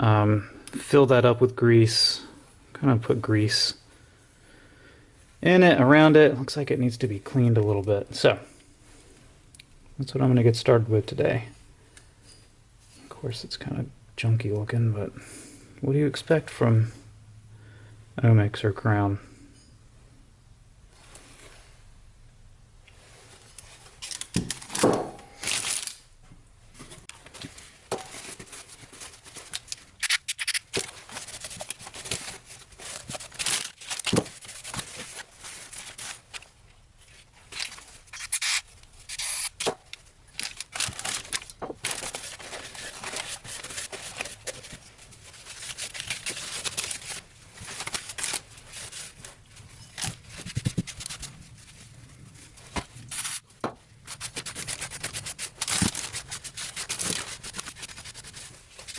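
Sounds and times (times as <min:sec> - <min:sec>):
crinkling: 0:26.7 - 0:58.9.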